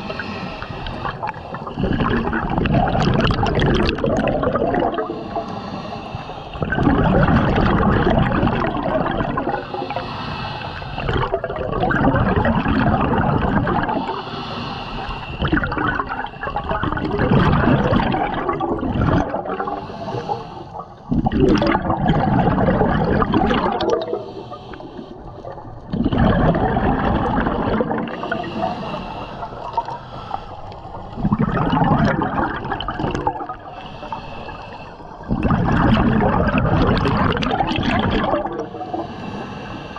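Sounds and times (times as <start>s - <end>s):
regulator exhaust bubbles gurgling: 1.0s - 5.2s, 6.6s - 9.6s, 11.0s - 14.2s, 15.4s - 19.8s, 21.0s - 24.3s, 25.1s - 28.7s, 31.1s - 33.7s, 35.2s - 38.8s.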